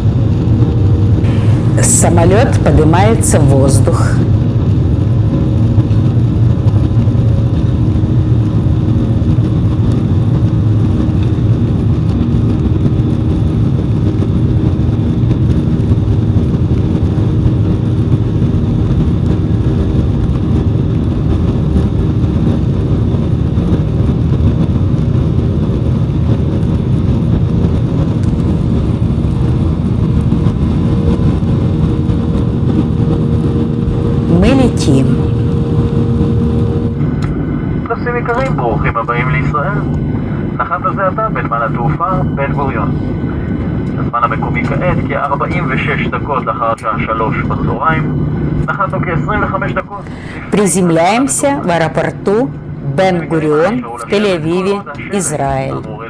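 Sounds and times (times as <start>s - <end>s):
jet engine drone in cabin: 0.0s - 56.0s
faint steady tones: 27.0s - 56.0s.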